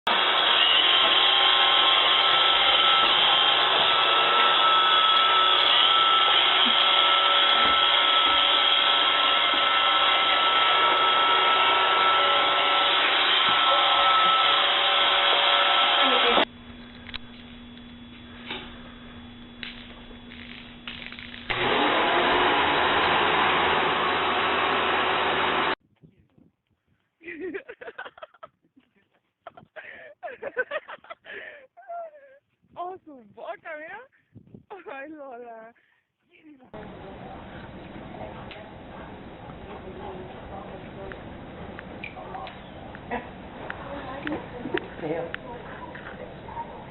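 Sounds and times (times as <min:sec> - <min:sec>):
appliance motor and fan whine: 0:00.1 - 0:25.8, 0:36.8 - 0:46.9
low hum: 0:16.4 - 0:21.5.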